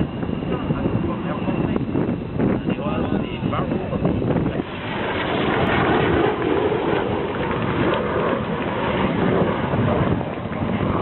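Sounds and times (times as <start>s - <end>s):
jet aircraft roaring overhead: 0.0s - 11.0s
wind buffeting microphone: 0.0s - 11.0s.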